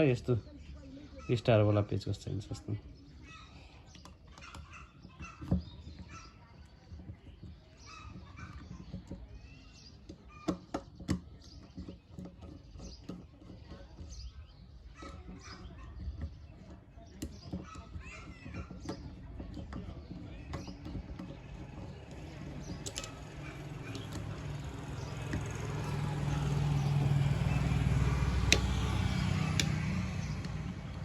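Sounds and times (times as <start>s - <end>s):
screwdriver clicks and squeaks: 22.6s - 24.3s.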